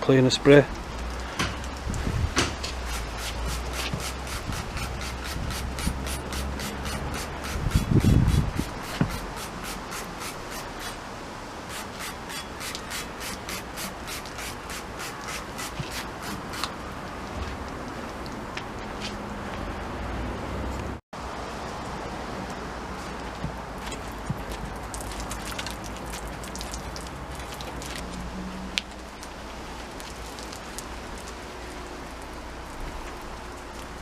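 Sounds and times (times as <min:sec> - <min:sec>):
scrubbing bicycle frame: 0:01.6 - 0:11.0, 0:11.7 - 0:16.8.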